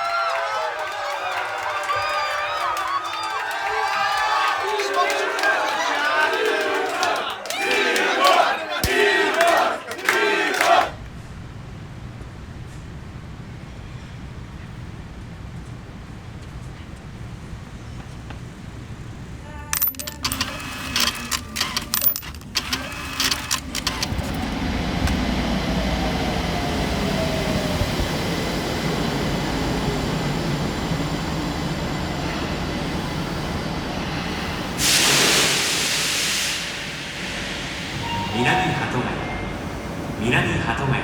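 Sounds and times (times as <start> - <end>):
sharp clattering clicks: 19.8 - 24.5
vehicle running with whine: 23.6 - 34.8
short loud hiss: 34.8 - 38.3.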